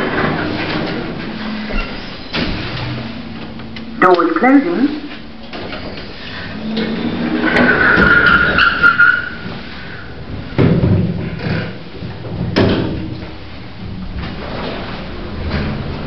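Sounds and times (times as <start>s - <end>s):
lift doors whining: 0.0s - 4.3s, 5.0s - 16.0s
heavy clunks of lift doors: 10.2s - 16.0s.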